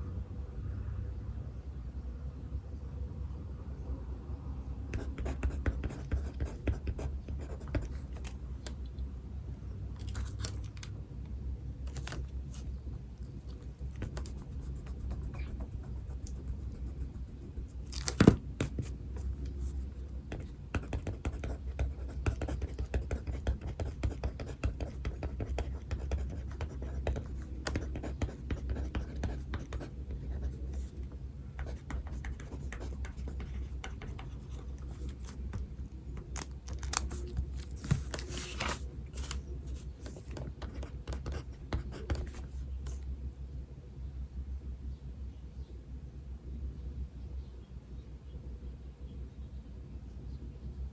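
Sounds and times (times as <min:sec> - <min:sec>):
pen scratching on paper: 0:05.0 - 0:08.4, 0:13.3 - 0:31.0, 0:31.6 - 0:35.4, 0:37.1 - 0:43.0.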